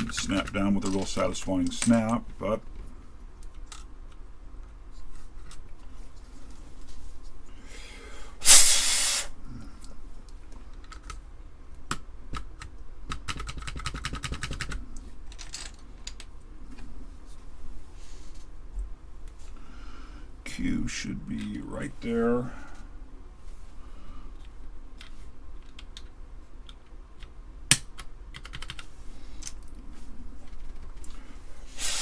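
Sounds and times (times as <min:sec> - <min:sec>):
keycaps clicking onto keyboard: 0:12.3 - 0:14.8, 0:26.7 - 0:28.9.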